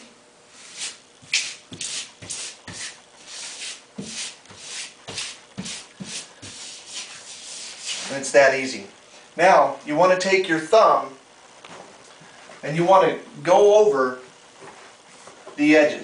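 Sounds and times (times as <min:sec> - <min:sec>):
hand rubbing vinyl swishing: 0:00.5 - 0:08.4.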